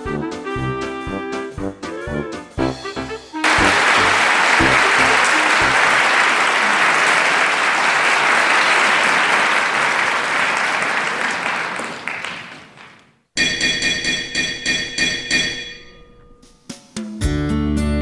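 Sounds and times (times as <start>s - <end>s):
crowd applause: 3.4s - 13.1s.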